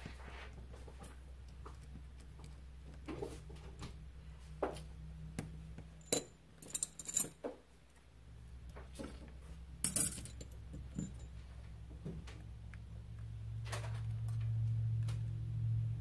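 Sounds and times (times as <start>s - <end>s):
low steady hum: 0.0s - 16.0s
metal tools clinking on workbench: 6.0s - 7.4s, 9.8s - 11.3s.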